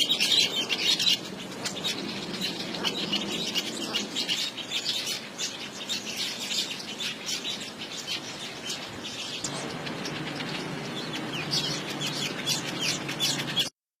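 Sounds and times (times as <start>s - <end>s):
low steady rushing noise: 0.0s - 13.7s
small birds chirping: 0.0s - 13.8s.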